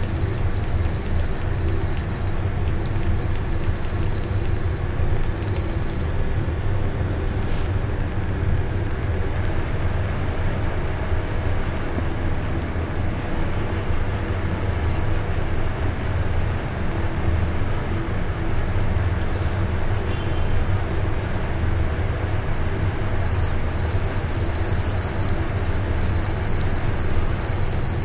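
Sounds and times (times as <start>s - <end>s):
short high-pitched beeps: 0.0s - 6.2s, 23.3s - 28.0s
air conditioner humming and rushing: 0.0s - 28.0s.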